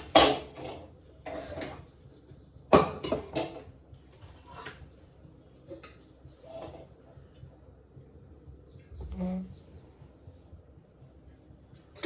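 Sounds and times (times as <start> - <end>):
utensils and dishes clattering: 0.0 - 2.0, 2.7 - 5.0, 5.6 - 7.0.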